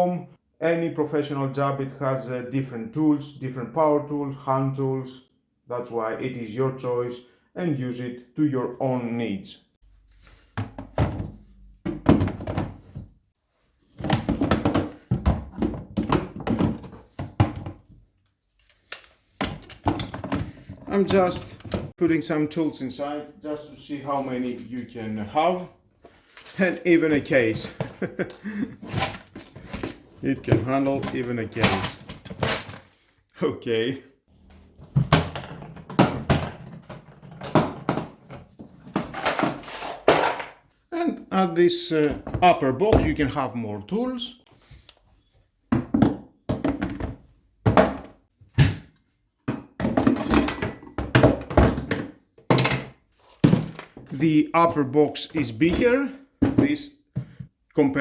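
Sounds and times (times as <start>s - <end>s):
tools knocking in plastic toolbox: 10.6s - 13.1s, 14.0s - 17.9s, 45.7s - 48.2s
tools clattering in plastic toolbox: 18.7s - 21.9s, 27.6s - 33.0s, 35.0s - 40.6s, 49.5s - 54.1s.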